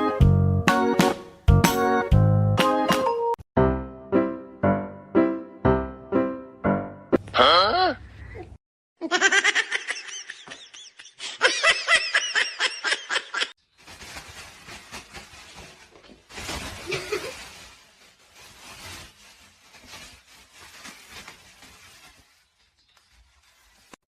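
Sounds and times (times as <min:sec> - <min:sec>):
laughter: 0:09.0 - 0:13.5, 0:16.9 - 0:17.4.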